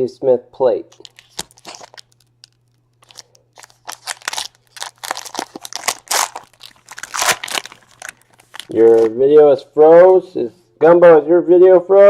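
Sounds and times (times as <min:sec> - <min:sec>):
card wrappers crinkling: 0:00.9 - 0:09.1.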